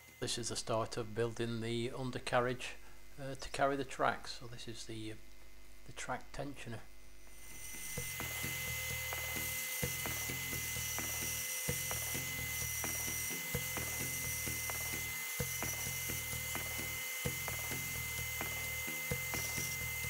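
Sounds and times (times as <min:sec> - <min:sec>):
power tool whining: 0:07.3 - 0:20.0
background music with bass: 0:07.8 - 0:20.0.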